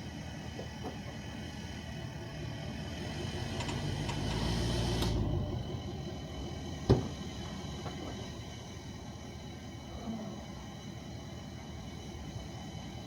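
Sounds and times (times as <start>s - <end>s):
steady background hum: 0.0s - 13.0s.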